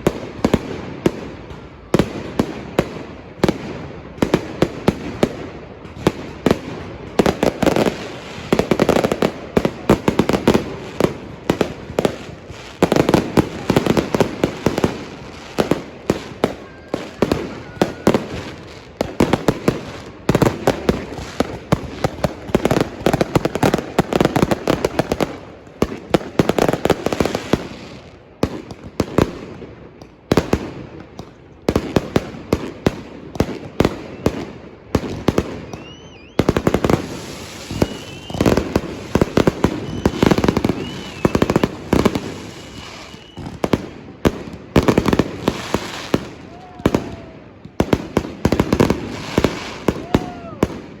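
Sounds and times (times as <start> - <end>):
fireworks bangs and crackling: 0.0 - 51.0
firework whistles: 16.2 - 18.6, 35.3 - 43.8, 49.0 - 50.7.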